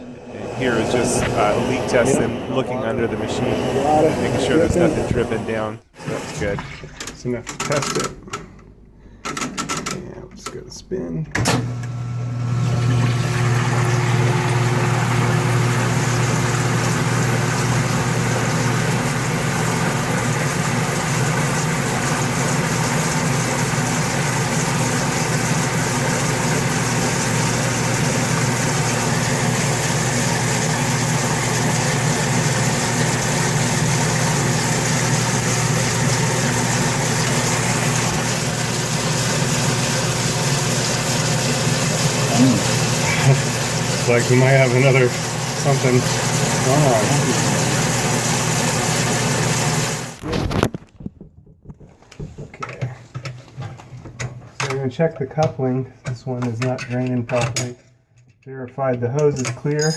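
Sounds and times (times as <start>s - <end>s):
washing machine spinning hum: 0.0s - 7.4s, 11.3s - 50.2s.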